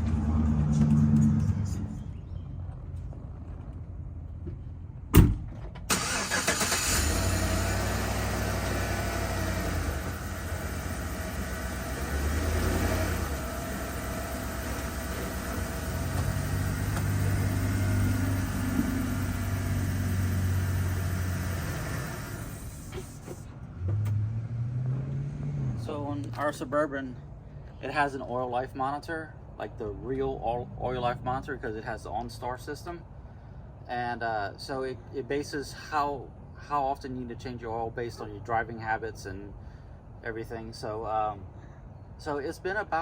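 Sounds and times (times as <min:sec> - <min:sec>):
car engine starting and running: 0:00.0 - 0:26.8.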